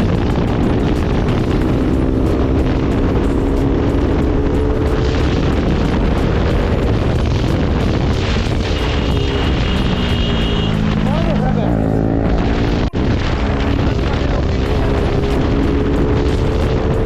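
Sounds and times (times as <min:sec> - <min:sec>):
motorcycle engine running: 0:00.0 - 0:17.0
wind rumble on microphone: 0:00.0 - 0:17.0.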